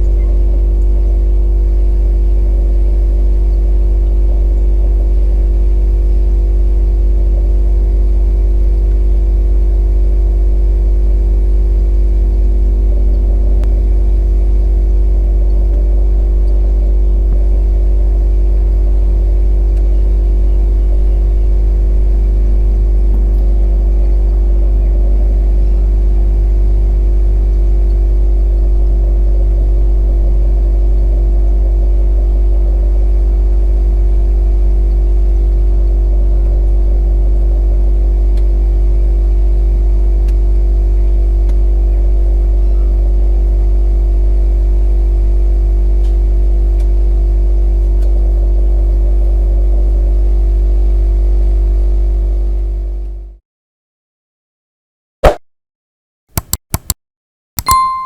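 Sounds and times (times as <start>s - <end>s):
drone motors humming: 0.0s - 39.6s.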